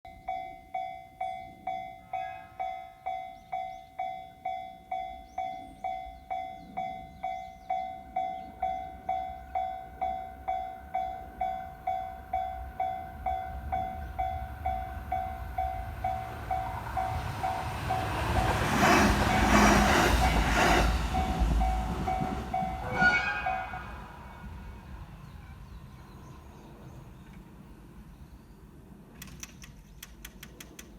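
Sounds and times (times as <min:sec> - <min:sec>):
level-crossing warning bell: 0:00.1 - 0:24.6
train rumbling and rattling: 0:05.2 - 0:28.2.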